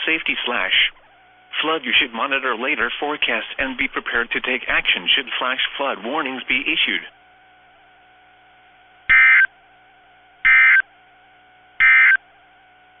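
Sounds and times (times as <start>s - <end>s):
faint steady hum: 0.0s - 13.0s
buzzy digital data tone bursts: 9.1s - 9.6s, 10.4s - 10.9s, 11.8s - 12.2s.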